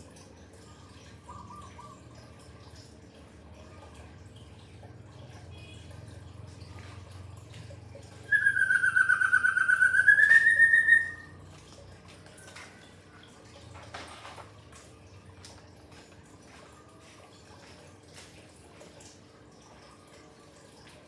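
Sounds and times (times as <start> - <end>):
songbird warbling whistle: 8.3 - 11.3.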